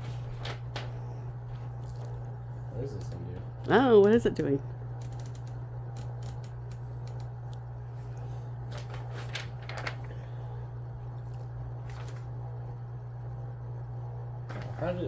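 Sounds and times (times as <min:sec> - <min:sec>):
steady low hum: 0:00.0 - 0:15.0
typewriter keys clicking: 0:05.0 - 0:07.3.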